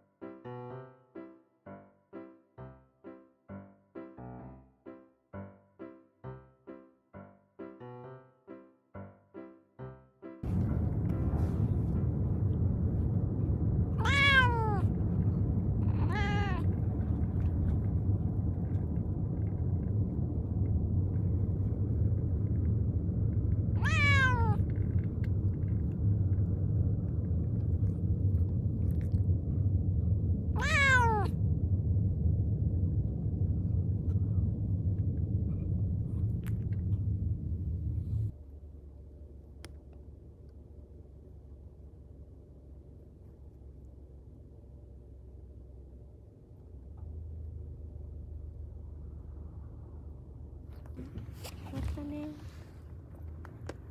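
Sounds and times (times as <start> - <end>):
steady low rumble: 10.4 - 53.9
cat meowing: 13.9 - 14.9, 15.8 - 16.8, 23.8 - 24.6, 30.6 - 31.4.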